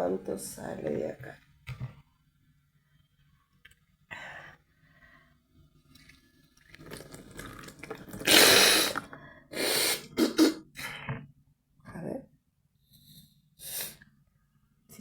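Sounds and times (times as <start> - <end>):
liquid gushing from nose: 6.7 - 10.6.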